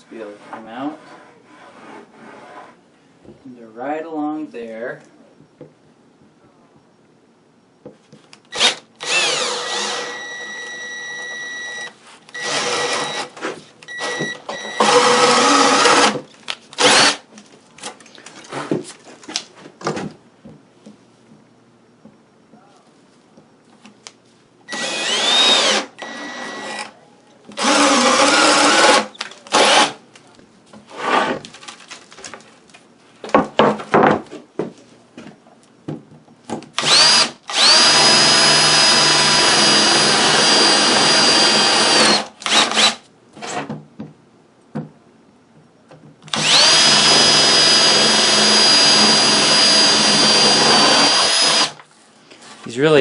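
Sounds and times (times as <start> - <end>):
router cutting wood: 8.5 - 10.9, 14.0 - 16.2, 16.8 - 17.2, 24.7 - 26.9, 27.6 - 30.0, 36.8 - 43.0, 46.3 - 51.8.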